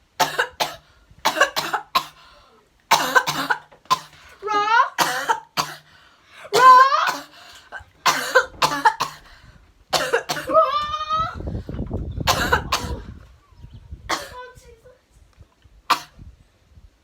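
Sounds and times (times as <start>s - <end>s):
woman coughing: 0.2s - 2.2s, 2.9s - 4.2s, 4.9s - 5.9s, 6.5s - 9.3s, 9.9s - 10.7s, 12.3s - 13.1s, 14.1s - 14.5s, 15.9s - 16.2s
woman groaning: 6.5s - 7.3s.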